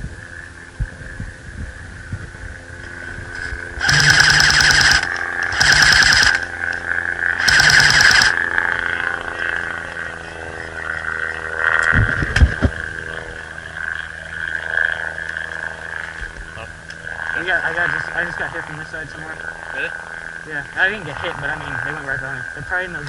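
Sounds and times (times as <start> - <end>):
high-pitched chirring drone: 3.4 - 11.6
airsoft gun automatic fire: 3.8 - 6.5, 7.4 - 8.4.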